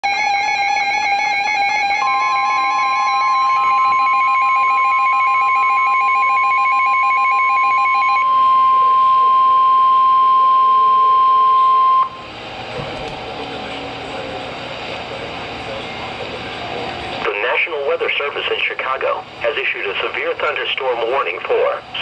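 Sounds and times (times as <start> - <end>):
steady high warning tone: 0.0 - 22.0
rapidly pulsing electronic alarm beep: 0.1 - 12.3.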